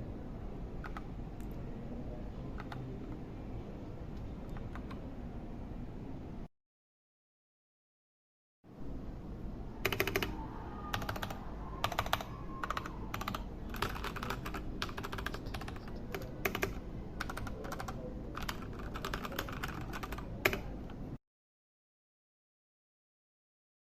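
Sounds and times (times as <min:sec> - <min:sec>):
low steady hum: 0:00.0 - 0:06.5, 0:08.7 - 0:21.2
mechanical keyboard typing: 0:04.5 - 0:05.0, 0:09.8 - 0:10.3, 0:10.9 - 0:20.9.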